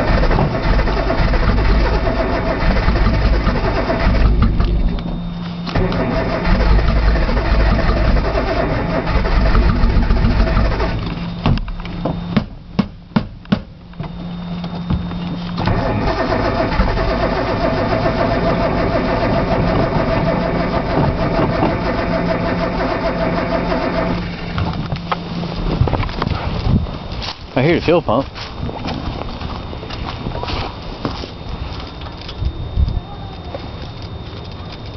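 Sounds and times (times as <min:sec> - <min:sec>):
car engine cranking on starter: 0:00.0 - 0:12.4, 0:14.0 - 0:26.3.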